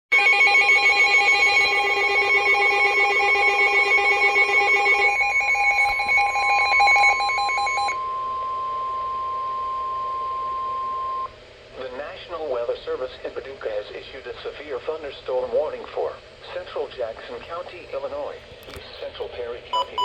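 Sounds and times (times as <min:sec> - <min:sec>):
steady warning tone: 0:00.1 - 0:11.3, 0:19.7 - 0:20.0
pulsing alarm beeps: 0:00.2 - 0:11.3, 0:19.8 - 0:20.0
electronic data chirps: 0:19.8 - 0:20.0.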